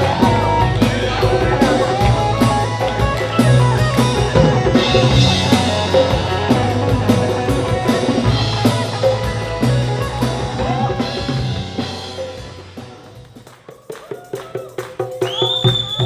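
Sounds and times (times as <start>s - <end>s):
drum kit beat: 0.0s - 16.0s
fusion band music: 0.0s - 16.0s.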